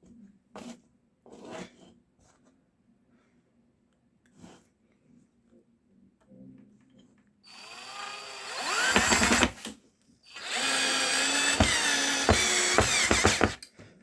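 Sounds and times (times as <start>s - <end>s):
drill motor whine: 7.5s - 9.5s, 10.3s - 13.6s.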